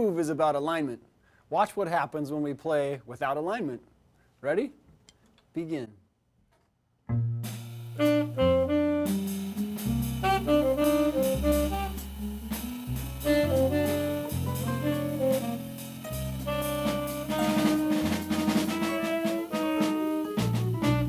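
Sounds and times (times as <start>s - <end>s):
bass line: 7.1s - 21.0s
drums: 7.1s - 21.0s.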